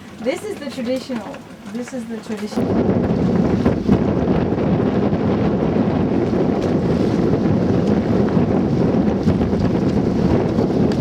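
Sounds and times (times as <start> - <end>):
wind rushing over microphone: 2.2 - 11.0.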